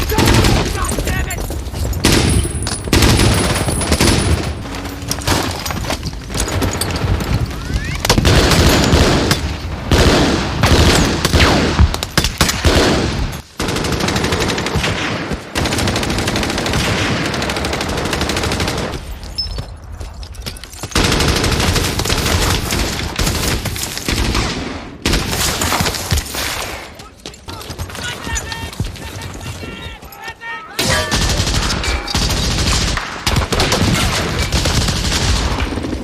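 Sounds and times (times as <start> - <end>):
rifle shots: 2.0 - 5.7, 8.1 - 19.1.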